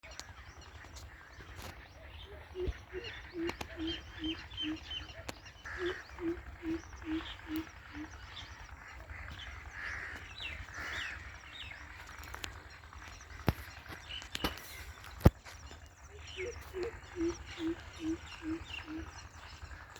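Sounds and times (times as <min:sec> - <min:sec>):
bird deep hooting: 0:02.0 - 0:08.7, 0:16.1 - 0:19.8.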